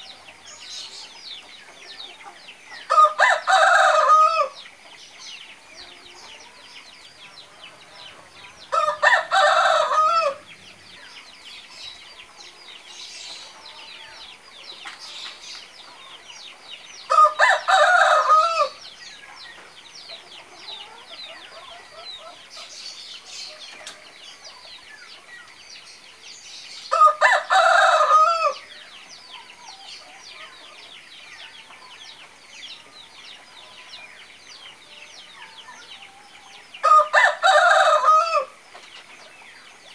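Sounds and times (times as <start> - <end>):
rooster crowing: 2.9 - 4.6, 8.7 - 10.4, 17.1 - 18.8, 26.9 - 28.6, 36.8 - 38.6.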